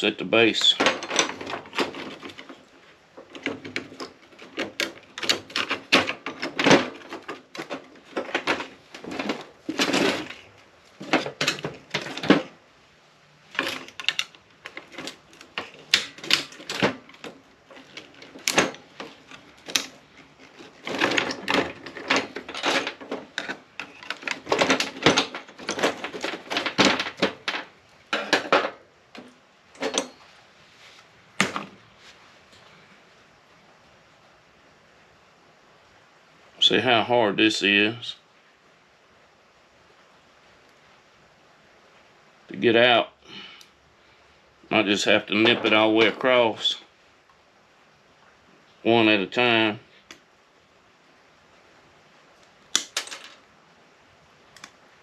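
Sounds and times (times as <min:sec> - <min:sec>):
light metal clatter: 0:00.6 - 0:02.6, 0:03.2 - 0:12.6, 0:13.5 - 0:30.3.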